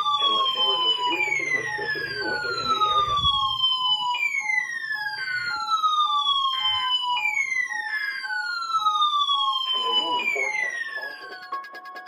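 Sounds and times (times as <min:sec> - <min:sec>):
electronic tone sliding down: 0:01.0 - 0:03.7.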